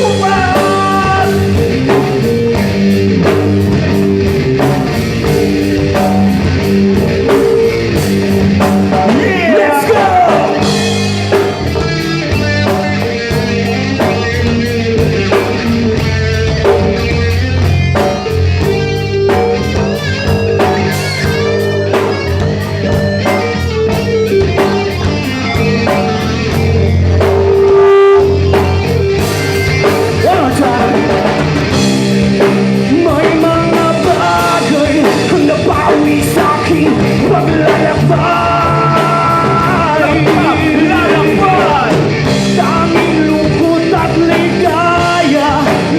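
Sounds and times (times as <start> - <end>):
person singing: 0.0 - 2.1, 32.8 - 45.9
bass guitar: 0.0 - 45.9
drum kit: 0.0 - 45.9
electric guitar: 0.0 - 45.9.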